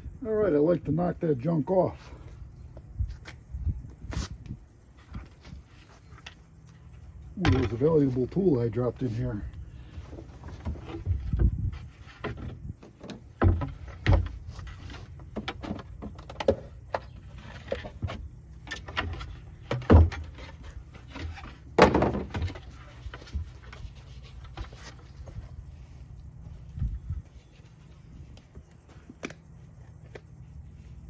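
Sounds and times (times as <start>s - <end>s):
knocks and thuds from handling: 10.0s - 23.8s
rustling: 18.8s - 31.0s.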